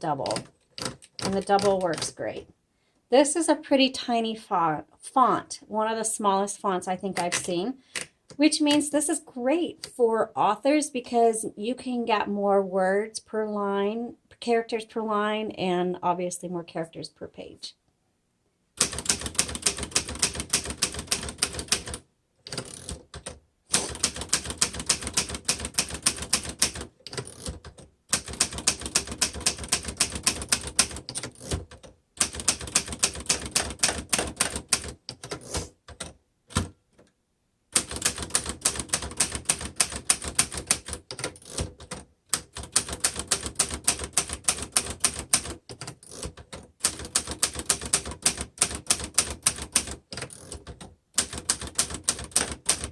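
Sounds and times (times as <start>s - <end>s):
manual typewriter typing: 0.0s - 2.2s, 18.8s - 36.8s, 37.7s - 52.9s.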